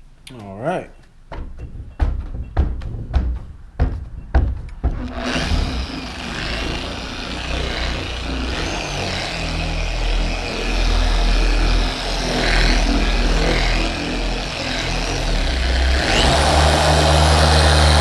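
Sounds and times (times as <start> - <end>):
sharp clicks and knocks: 0.2 - 6.1
orbital sander running: 4.9 - 18.0.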